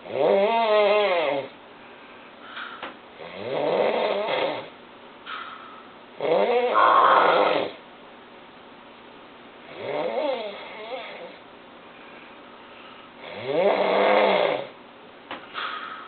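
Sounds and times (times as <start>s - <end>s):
person snoring loudly: 6.2s - 7.8s
soft breaths: 11.8s - 13.2s.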